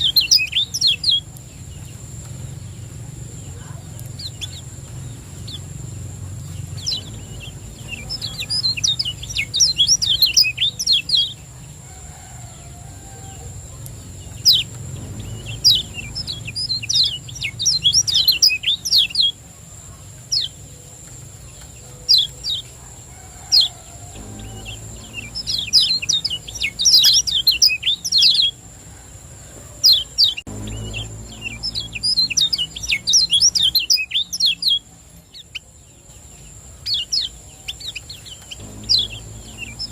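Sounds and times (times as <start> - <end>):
bird chirping fast and high: 0.0 - 1.3, 6.5 - 11.4, 14.3 - 19.4, 24.2 - 28.6, 29.9 - 34.8.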